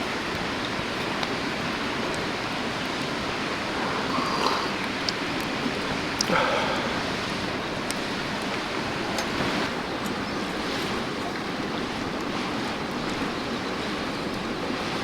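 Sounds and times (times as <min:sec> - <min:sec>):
river running over rocks: 0:00.0 - 0:15.0
faint light ticks: 0:01.0 - 0:01.4.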